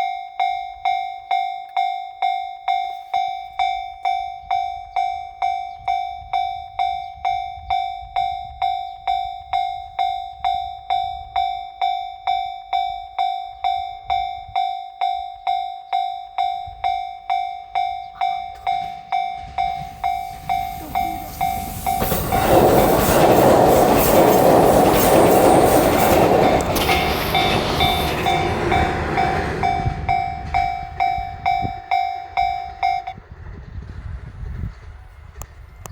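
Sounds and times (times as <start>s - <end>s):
level crossing warning bell: 0.0s - 33.2s
train passing: 16.2s - 35.9s.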